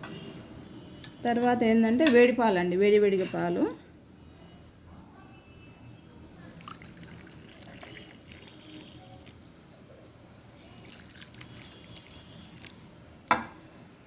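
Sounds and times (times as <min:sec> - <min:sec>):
milk being poured: 0:06.2 - 0:12.9.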